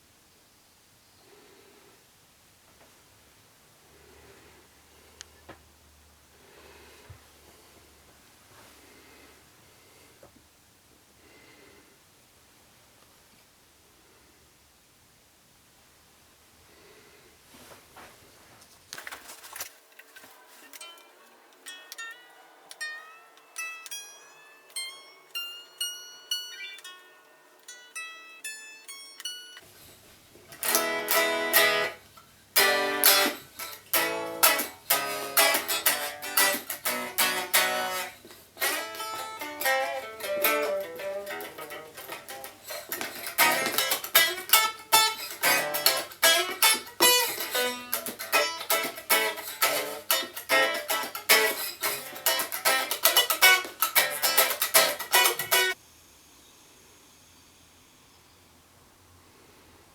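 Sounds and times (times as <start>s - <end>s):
plucked guitar notes: 22.8s - 29.6s, 30.5s - 32.0s, 32.6s - 55.8s.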